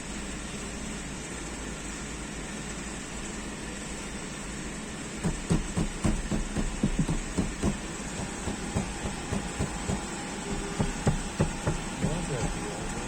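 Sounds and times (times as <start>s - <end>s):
steady low hum: 1.7s - 13.0s
knocking on car dashboard: 5.2s - 13.0s.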